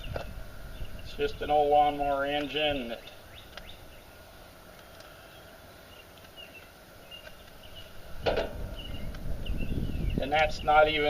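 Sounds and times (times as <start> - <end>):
faint bird chirps: 4.8 - 8.1, 8.7 - 10.8.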